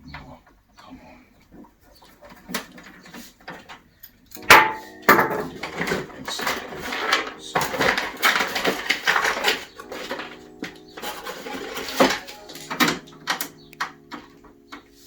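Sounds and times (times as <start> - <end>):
panel clattering and scraping: 4.4 - 15.0.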